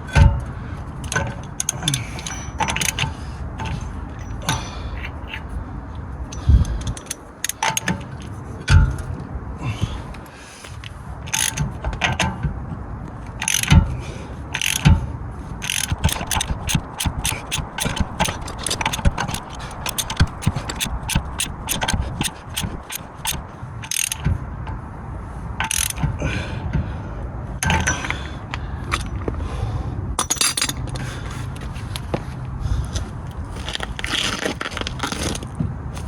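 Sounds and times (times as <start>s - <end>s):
ratchet wrench clicking: 6.3s - 8.0s, 11.3s - 11.7s, 13.4s - 13.8s, 14.6s - 14.9s, 15.6s - 24.2s, 25.6s - 26.0s
metal tools knocking: 15.6s - 24.2s.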